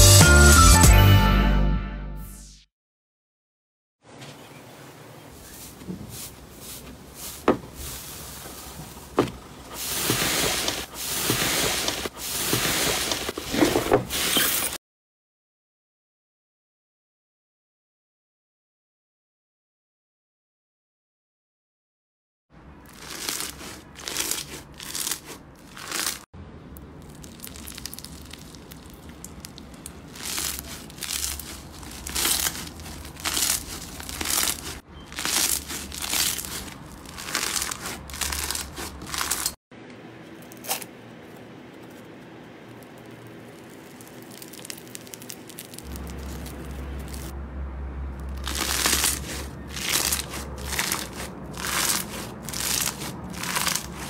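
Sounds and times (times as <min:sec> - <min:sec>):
slime crackling squishes: 0:22.8 - 0:39.6, 0:40.6 - 0:47.3, 0:48.2 - 0:54.0.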